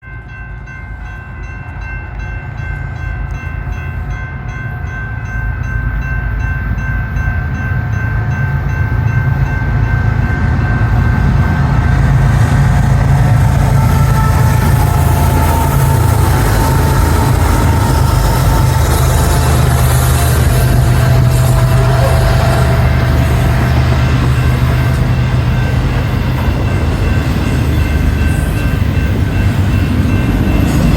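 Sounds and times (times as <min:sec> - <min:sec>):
diesel locomotive rumble: 0:01.4 - 0:30.9
train air horn: 0:13.3 - 0:25.2.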